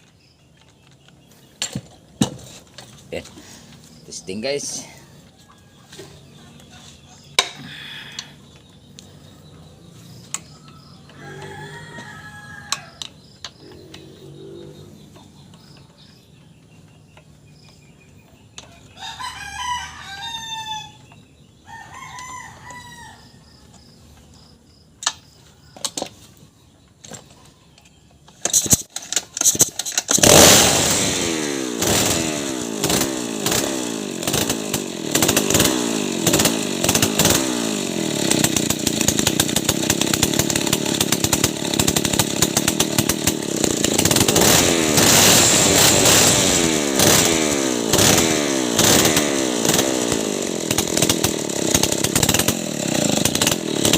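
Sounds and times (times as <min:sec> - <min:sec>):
chainsaw running loudly: 0:01.7 - 0:05.2, 0:07.4 - 0:15.2, 0:28.4 - 0:53.9
rooster crowing: 0:04.8 - 0:06.2, 0:10.5 - 0:13.2, 0:18.8 - 0:23.7
chainsaw pull-start: 0:28.3 - 0:53.9.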